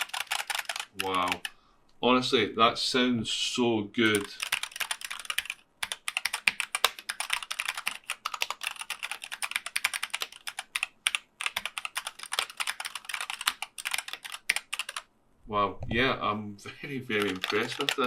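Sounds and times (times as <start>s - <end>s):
mechanical keyboard typing: 0.0s - 1.5s, 4.0s - 15.1s, 17.1s - 18.0s.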